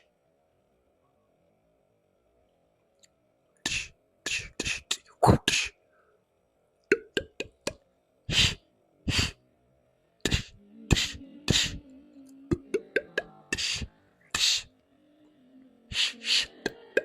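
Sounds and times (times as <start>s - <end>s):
mouth-made punch sounds: 3.7s - 5.7s, 10.3s - 11.8s.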